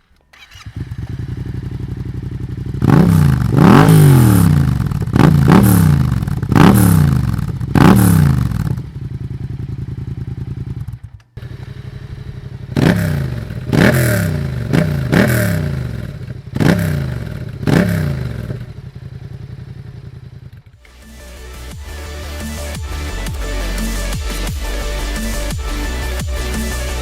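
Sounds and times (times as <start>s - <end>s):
engine revving and idling: 0.3s - 27.0s.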